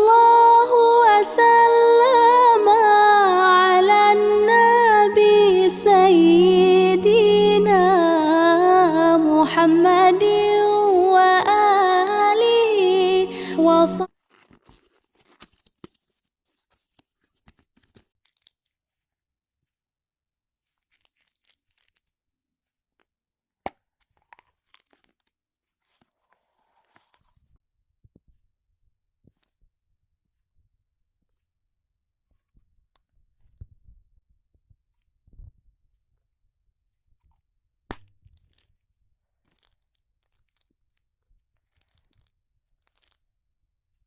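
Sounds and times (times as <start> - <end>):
crinkling and tearing: 14.0 - 19.0, 20.6 - 22.2, 24.0 - 27.5, 37.9 - 43.3.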